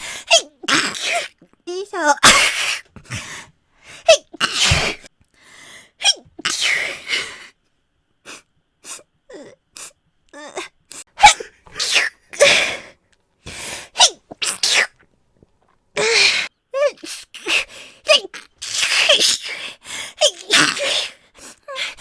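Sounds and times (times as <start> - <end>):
breaths and sniffs: 0.0 - 0.3, 2.4 - 7.6, 10.9 - 14.0
woman sneezing: 2.2 - 2.8, 4.1 - 5.1, 11.2 - 12.8.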